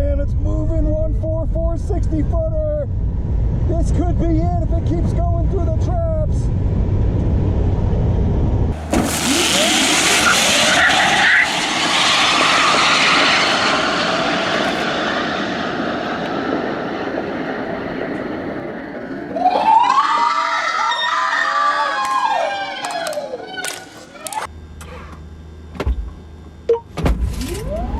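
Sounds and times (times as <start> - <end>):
low rumble: 0.0 - 19.5
wind and tyre noise: 0.8 - 19.9
electric motors whining: 8.7 - 15.2.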